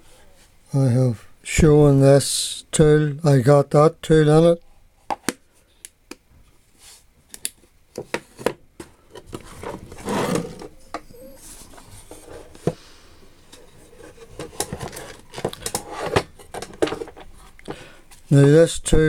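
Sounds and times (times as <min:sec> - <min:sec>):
rubbing sliding noise: 0:09.4 - 0:12.7.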